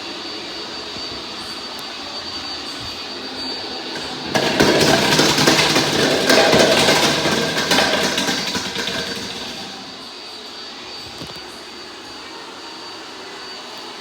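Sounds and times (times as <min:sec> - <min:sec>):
robot vacuum motor hum: 0:02.7 - 0:10.1
bowling pins clattering: 0:03.9 - 0:10.1.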